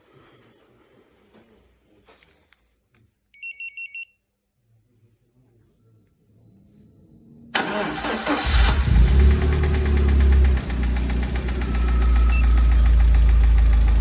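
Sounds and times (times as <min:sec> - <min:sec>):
car engine cranking and running: 0:07.6 - 0:14.0.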